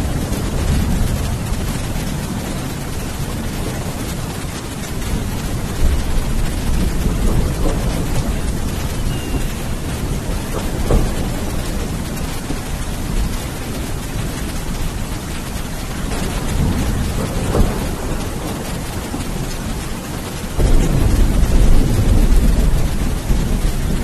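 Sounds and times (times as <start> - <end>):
heavy rain: 0.0 - 24.0
rolling thunder: 0.0 - 24.0.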